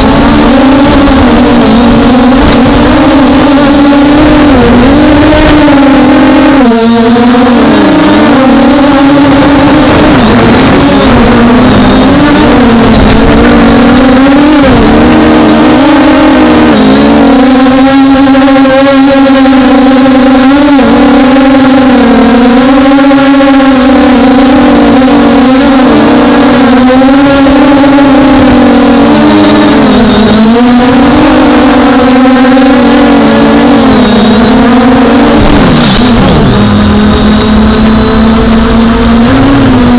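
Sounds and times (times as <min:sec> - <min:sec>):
drone propellers whining: 0:00.0 - 0:39.9
low rumble: 0:33.9 - 0:39.9.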